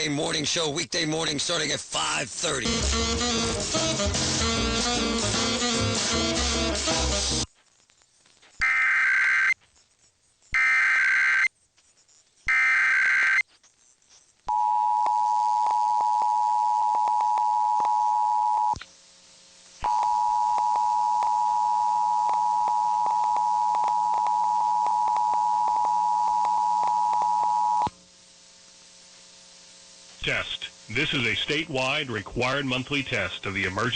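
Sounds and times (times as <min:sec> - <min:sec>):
data header squawks: 0:08.6 - 0:09.6, 0:10.5 - 0:11.5, 0:12.1 - 0:13.4.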